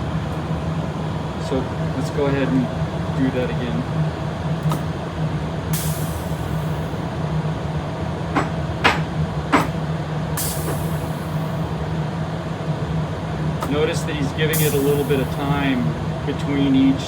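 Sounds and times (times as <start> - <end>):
steady low hum: 0.0 - 17.0
air exhausting with a hiss: 5.7 - 7.0, 10.4 - 11.8, 13.6 - 16.0
sharp valve clicks: 14.6 - 15.7.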